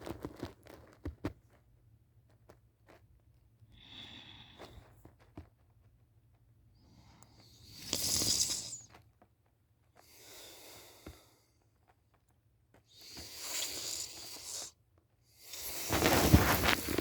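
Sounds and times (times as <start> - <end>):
person snoring: 7.7 - 8.8.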